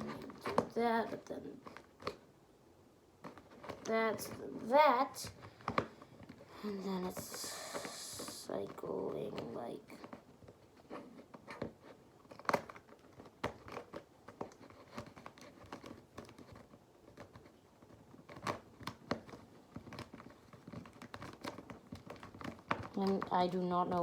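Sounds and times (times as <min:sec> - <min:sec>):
plastic puzzle cube clicking: 0:05.3 - 0:24.0.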